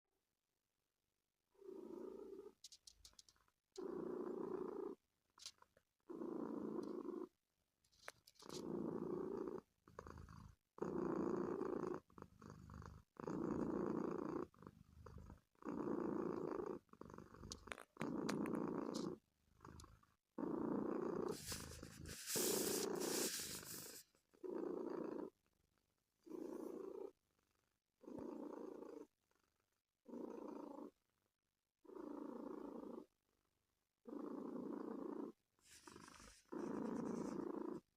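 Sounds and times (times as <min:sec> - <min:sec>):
cat purring: 0:01.5 - 0:31.2, 0:31.8 - 0:37.9
cat hissing breath: 0:21.2 - 0:24.1, 0:35.6 - 0:36.6.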